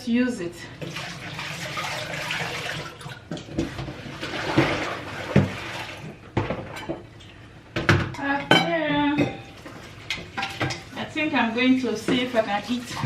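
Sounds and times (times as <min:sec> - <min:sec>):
tap water running into sink: 0:00.8 - 0:06.2
dishes and pots knocking: 0:07.8 - 0:09.5.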